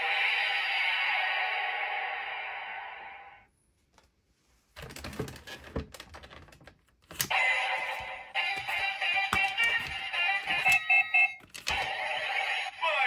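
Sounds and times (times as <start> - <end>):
plastic toy clicks and rattles: 4.8 - 10.8, 11.4 - 12.0
toy belt electronic music: 7.2 - 13.0.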